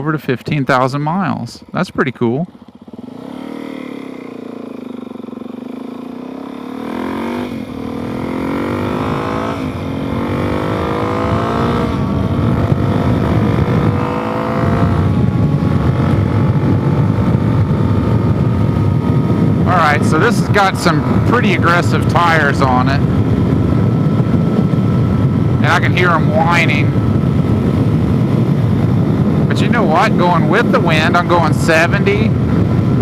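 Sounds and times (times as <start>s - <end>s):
motorcycle engine accelerating: 0.0s - 33.0s
wind noise: 6.7s - 33.0s.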